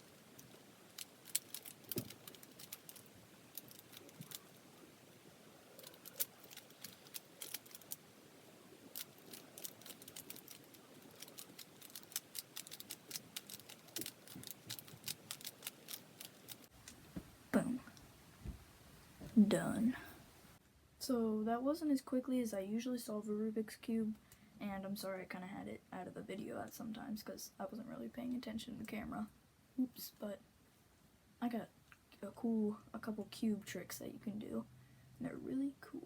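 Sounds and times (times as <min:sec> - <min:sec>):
puzzle cube clicking: 0:00.3 - 0:04.5, 0:05.8 - 0:08.0, 0:08.9 - 0:16.7.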